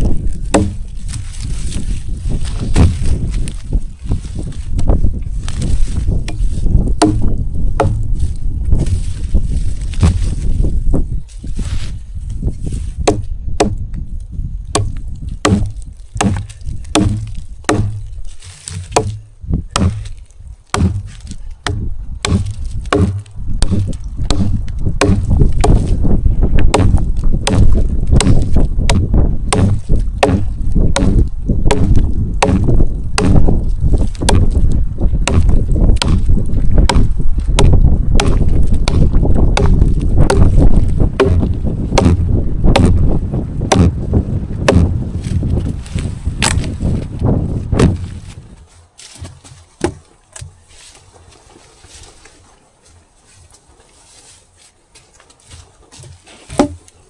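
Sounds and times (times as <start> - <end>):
wind buffeting microphone: 0.0 - 48.8
sharp irregular knocks: 0.5 - 1.3, 6.2 - 8.2, 13.0 - 13.8, 14.7 - 26.0, 26.6 - 33.5, 35.2 - 43.1, 43.7 - 44.0, 44.6 - 44.9, 56.0 - 56.9.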